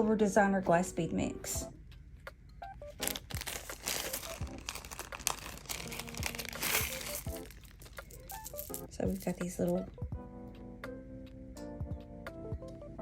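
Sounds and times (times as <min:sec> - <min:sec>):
plastic bag of beads crinkling: 0:03.0 - 0:09.6.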